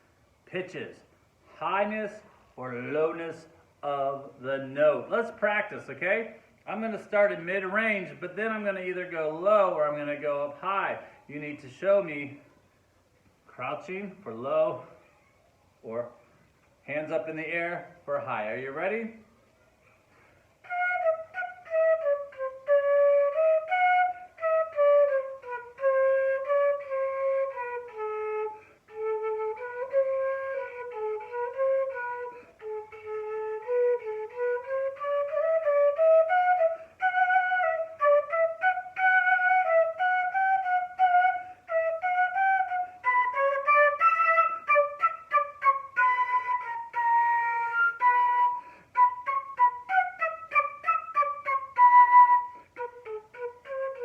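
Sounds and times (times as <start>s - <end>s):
solo flute melody: 20.4s - 54.0s.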